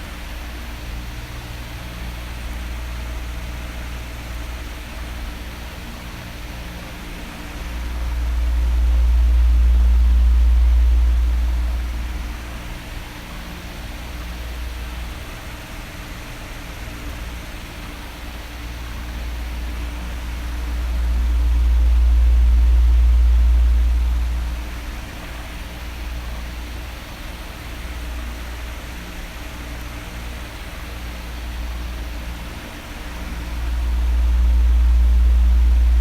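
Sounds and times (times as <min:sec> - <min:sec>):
fan air hissing: 0:00.0 - 0:15.4, 0:17.7 - 0:28.8, 0:30.2 - 0:36.0
faint fan hum: 0:00.0 - 0:36.0.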